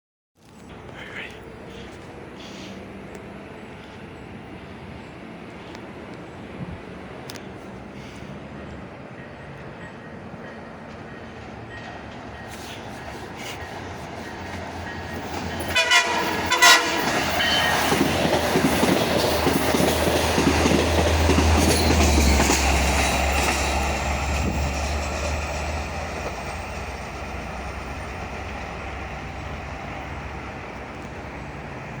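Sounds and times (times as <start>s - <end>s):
train passing with wheel-on-rail noise: 0.4s - 32.0s
train horn blasts: 15.6s - 18.0s.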